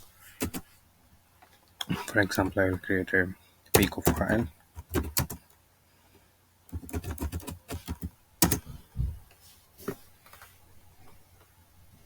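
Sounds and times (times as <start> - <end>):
typing on laptop keyboard: 0.4 - 0.6, 3.7 - 5.6, 6.7 - 8.7.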